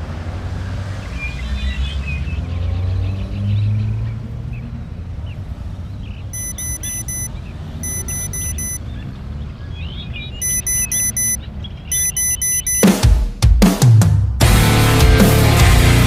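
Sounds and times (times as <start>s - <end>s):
rapid electronic beeps: 6.4s - 8.8s, 10.4s - 13.1s
faint chirps: 6.4s - 8.9s, 10.3s - 12.9s.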